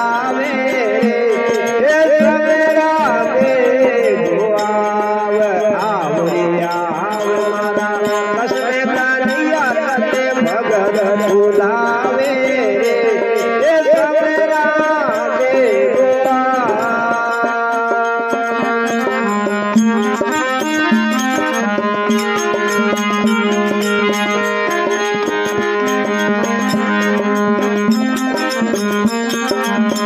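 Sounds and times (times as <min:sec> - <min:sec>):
tabla: 0:00.0 - 0:30.0
gliding melodic lead: 0:16.5 - 0:30.0.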